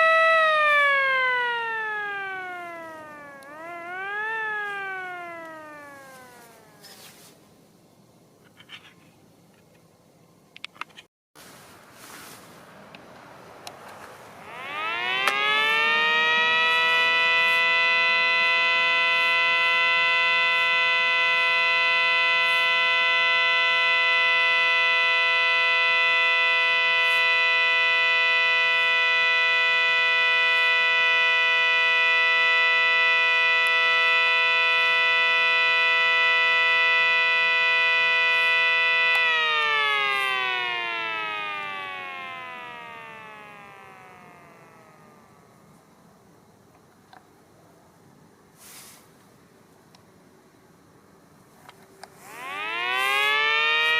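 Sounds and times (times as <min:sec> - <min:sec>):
warning siren wailing: 0:00.0 - 0:07.4, 0:14.3 - 0:45.8, 0:52.2 - 0:53.9.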